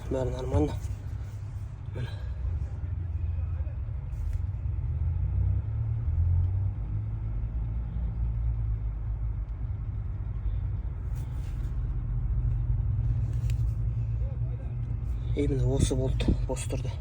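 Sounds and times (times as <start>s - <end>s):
car engine rumbling: 0.0s - 17.0s.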